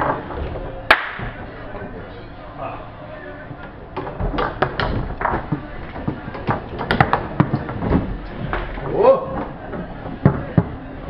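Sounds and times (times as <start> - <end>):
foosball ball knocks and clacks: 0.0 - 0.3, 0.9 - 1.5, 3.9 - 11.0.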